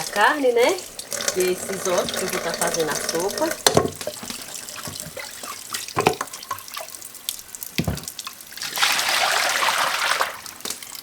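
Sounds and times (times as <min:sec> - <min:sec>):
tap water running into sink: 0:00.0 - 0:11.0
knocks of pot and bones: 0:03.7 - 0:05.2, 0:06.0 - 0:06.3, 0:07.8 - 0:08.2.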